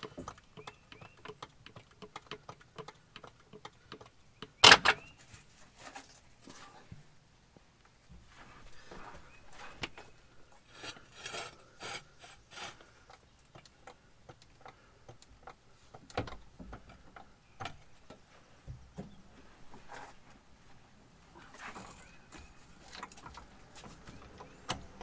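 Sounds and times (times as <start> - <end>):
metal clicks and knocks: 0.0 - 5.1.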